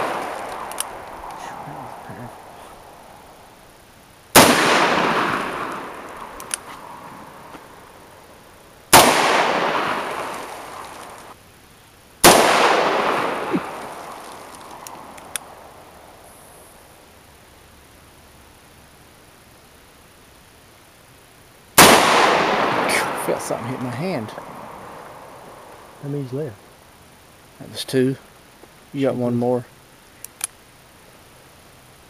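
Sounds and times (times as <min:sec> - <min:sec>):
faint clicks: 0:00.0 - 0:01.4, 0:05.7 - 0:06.8, 0:13.6 - 0:15.5, 0:30.2 - 0:30.6
gunshots with echo: 0:00.0 - 0:02.4, 0:04.4 - 0:06.1, 0:08.9 - 0:10.8, 0:12.2 - 0:14.2, 0:21.8 - 0:24.4.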